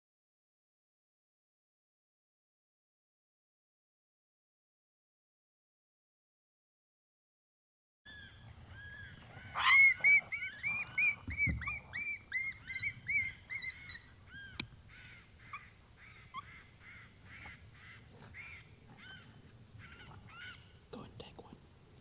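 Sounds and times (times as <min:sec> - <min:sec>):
coyotes yipping: 0:08.1 - 0:20.8.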